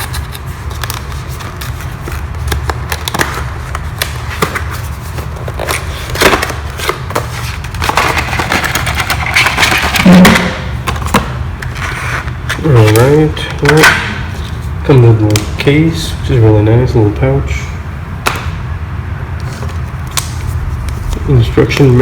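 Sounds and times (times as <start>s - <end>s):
packaging being opened: 0.0s - 14.6s
steady low hum: 0.0s - 22.0s.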